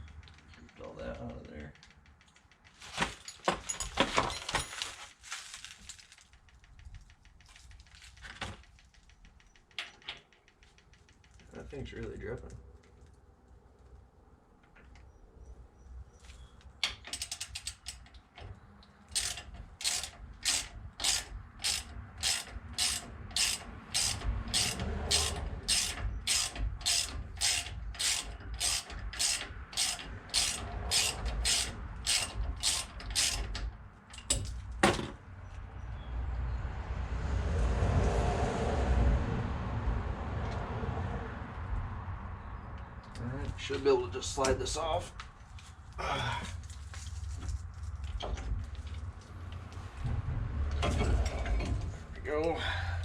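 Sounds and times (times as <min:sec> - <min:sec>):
ratchet wrench clicking: 0:16.8 - 0:18.3, 0:19.1 - 0:34.6.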